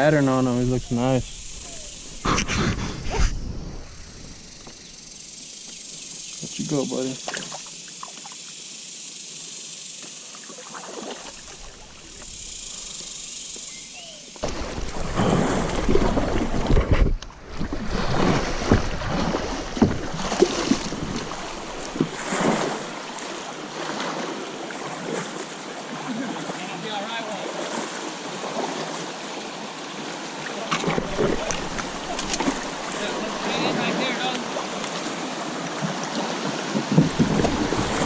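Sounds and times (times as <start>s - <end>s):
insect drone: 0.0s - 38.0s
rushing splashing water: 10.4s - 13.0s, 14.4s - 38.0s.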